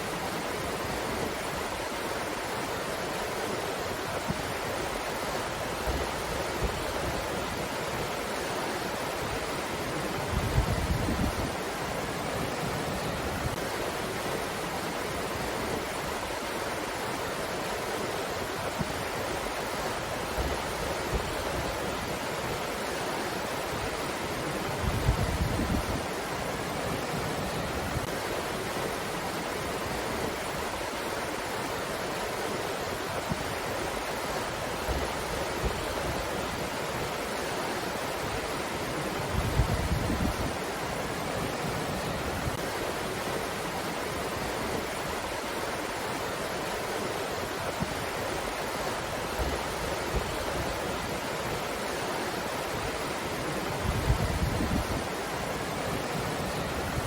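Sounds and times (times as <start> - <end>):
wind hiss: 0.0 - 57.0
wind buffeting microphone: 24.8 - 26.1, 39.2 - 40.6, 53.7 - 57.0.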